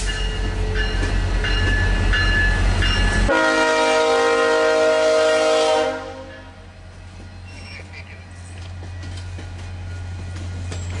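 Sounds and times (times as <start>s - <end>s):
train rumbling past: 0.0s - 11.0s
locomotive air horn blast: 3.3s - 6.7s.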